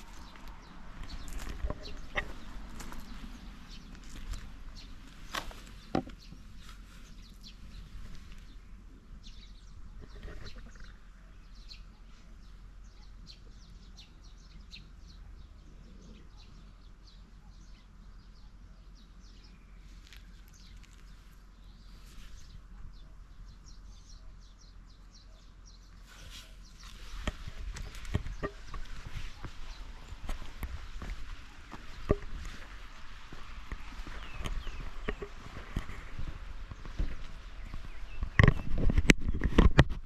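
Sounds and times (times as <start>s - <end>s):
steady low rumble: 0.0s - 13.7s, 26.6s - 38.4s
small birds chirping: 0.0s - 40.0s.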